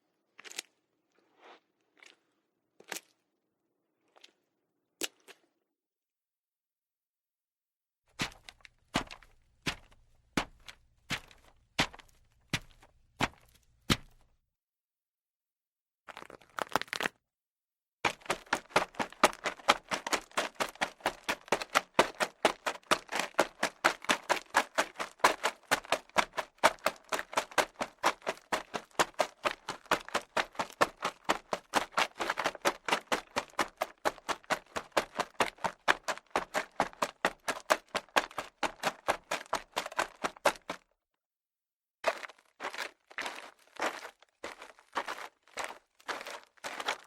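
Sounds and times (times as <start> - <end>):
running footsteps on hard surface: 8.2 - 14.3, 18.0 - 40.8, 42.1 - 47.0.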